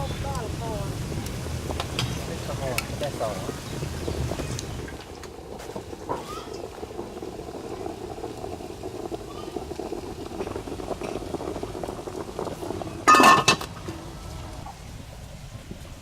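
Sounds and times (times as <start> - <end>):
liquid boiling in a pot: 0.0 - 16.0
metal utensil clattering on pot: 13.1 - 13.7.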